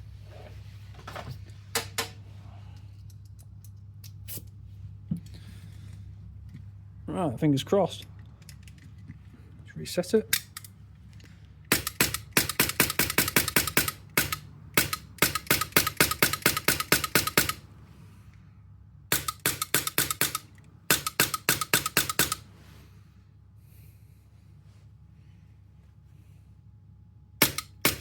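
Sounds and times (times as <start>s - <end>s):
airsoft rifle full-auto bursts: 11.7s - 17.6s, 19.1s - 22.4s.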